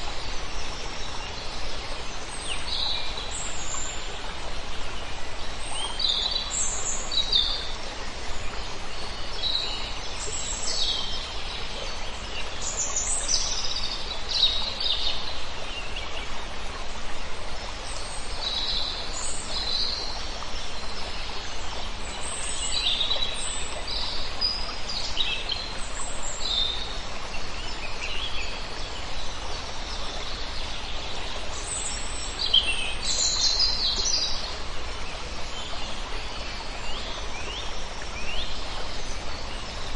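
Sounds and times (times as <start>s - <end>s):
flowing water: 0.0s - 39.9s
songbirds chirping: 0.0s - 39.9s.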